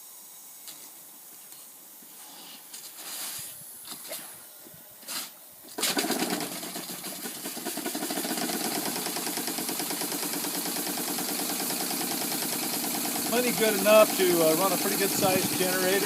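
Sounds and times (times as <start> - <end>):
faint steam hiss: 0.0 - 5.8
steam engine running: 6.0 - 16.0.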